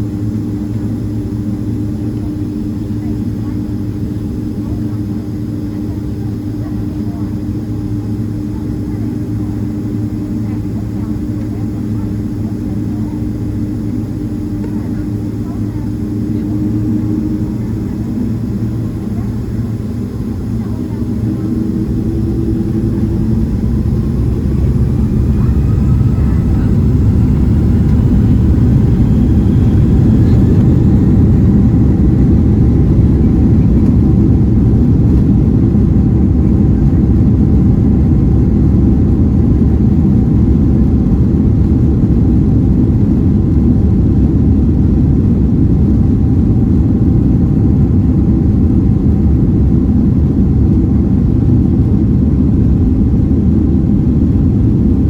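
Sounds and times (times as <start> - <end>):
jet engines spooling up: 13.4 - 35.9.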